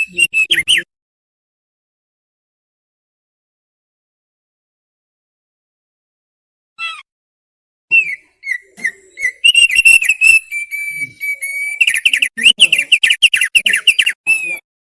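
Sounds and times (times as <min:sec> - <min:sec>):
bird singing whistled notes: 0:07.9 - 0:14.6.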